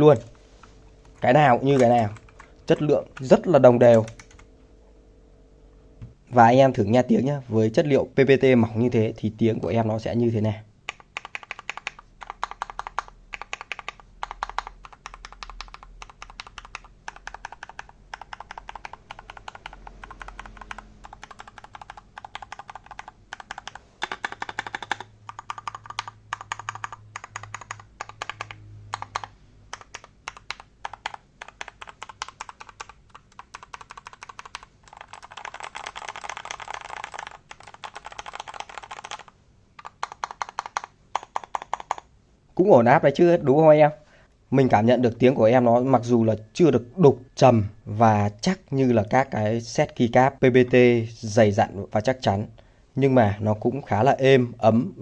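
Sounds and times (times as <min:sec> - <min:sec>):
mechanical keyboard typing: 0:01.1 - 0:04.4, 0:10.9 - 0:42.1.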